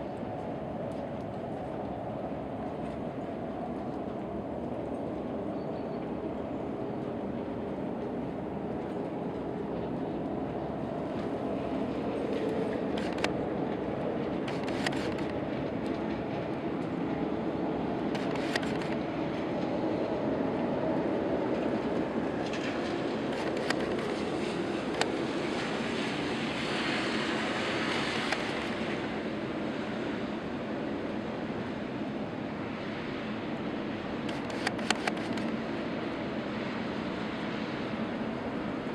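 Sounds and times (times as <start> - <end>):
sharp clicks: 18.1 - 19.0, 23.3 - 24.2, 34.3 - 35.6.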